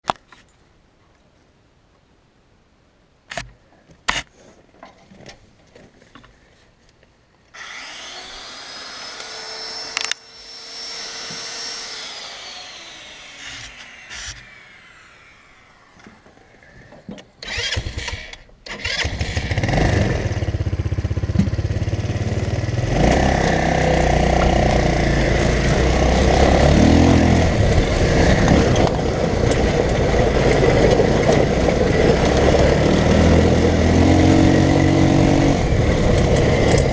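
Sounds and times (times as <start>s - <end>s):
starter whine: 7.6s - 36.9s
go-kart engine running: 17.4s - 36.9s.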